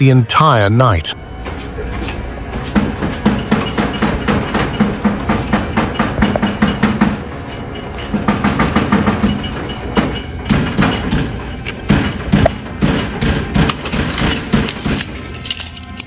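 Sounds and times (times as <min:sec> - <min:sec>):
rapid knocking on a door: 0:02.6 - 0:14.6.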